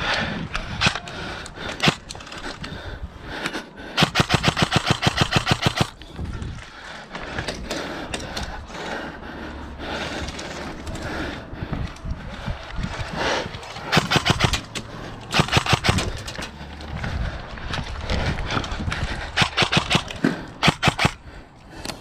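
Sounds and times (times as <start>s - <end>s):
airsoft rifle full-auto burst: 4.0s - 6.0s, 13.9s - 14.7s, 15.3s - 16.2s, 19.4s - 21.2s.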